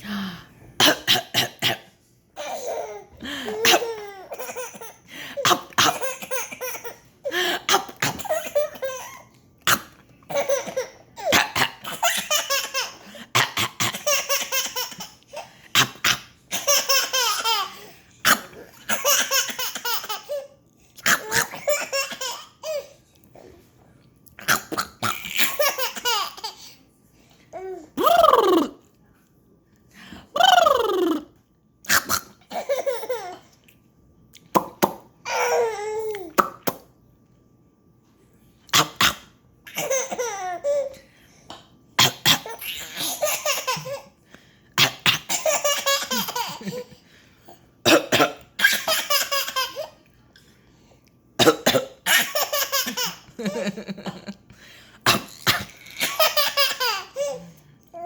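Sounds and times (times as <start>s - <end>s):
person coughing: 0.8s - 1.9s, 47.8s - 49.0s, 51.4s - 52.5s
baby belly laughing: 10.3s - 20.4s, 25.1s - 26.7s, 44.9s - 47.0s, 52.1s - 54.3s, 55.2s - 57.4s.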